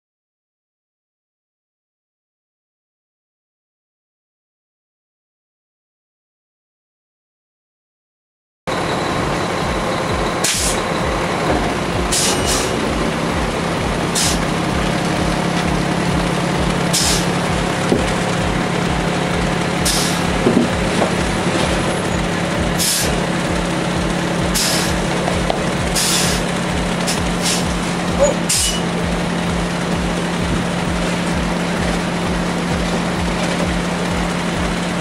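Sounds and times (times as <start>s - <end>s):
truck engine running: 8.7s - 35.0s
short hiss: 22.8s - 23.1s.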